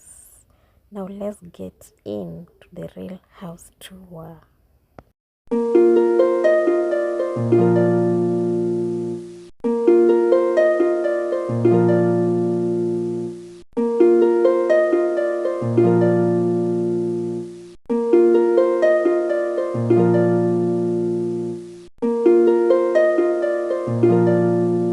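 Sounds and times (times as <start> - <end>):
plucked string melody: 5.5 - 24.9.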